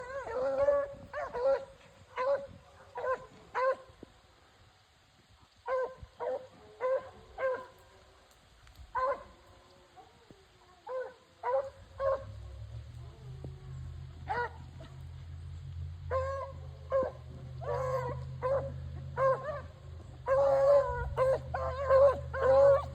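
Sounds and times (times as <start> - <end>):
dogs baying: 0.0 - 3.9, 10.1 - 15.4, 16.0 - 22.9.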